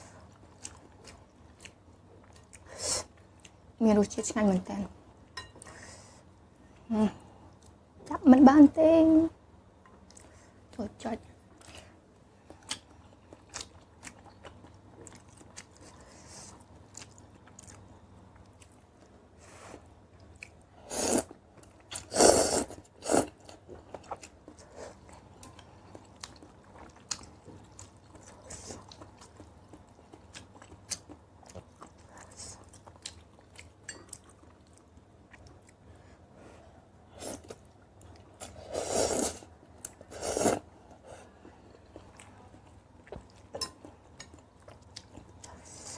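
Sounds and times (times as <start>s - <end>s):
person chewing and crunching: 21.2s - 35.8s.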